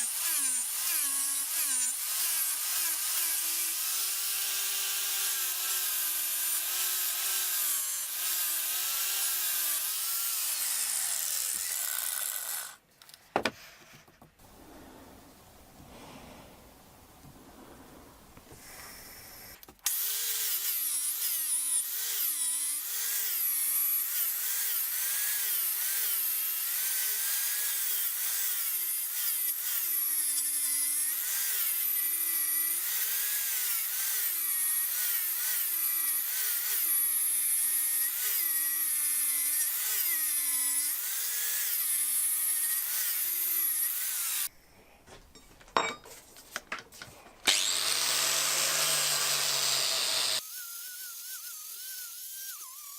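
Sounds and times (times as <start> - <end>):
high-speed power tool: 0.0 - 12.8, 18.9 - 44.5, 47.5 - 52.9
power tool humming: 0.0 - 12.8, 47.4 - 52.9.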